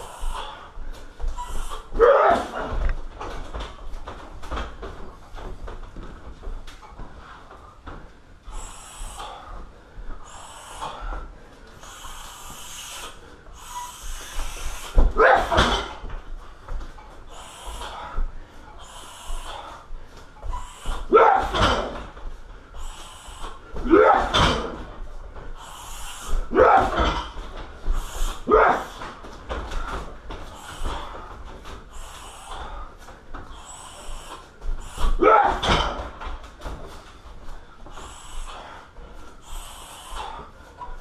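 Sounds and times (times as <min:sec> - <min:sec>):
man grunting: 0:01.9 - 0:02.8, 0:15.1 - 0:16.0, 0:21.1 - 0:22.0, 0:23.8 - 0:24.8, 0:26.4 - 0:27.4, 0:28.4 - 0:29.0, 0:35.0 - 0:36.0
sharp hissing exhales: 0:08.5 - 0:09.6, 0:10.2 - 0:15.1, 0:17.3 - 0:21.1, 0:22.7 - 0:23.7, 0:25.6 - 0:26.5, 0:27.8 - 0:28.5, 0:31.9 - 0:32.9, 0:33.5 - 0:35.2, 0:37.9 - 0:40.6.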